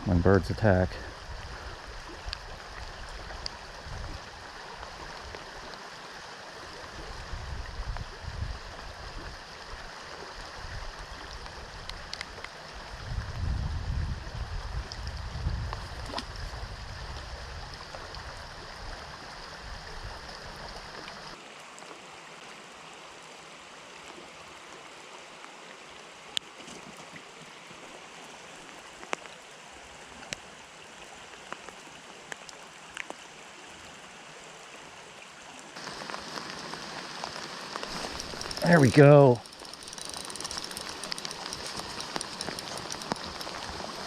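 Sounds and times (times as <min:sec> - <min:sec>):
river water rushing: 0:35.6 - 0:44.0
light clicks: 0:36.0 - 0:44.0.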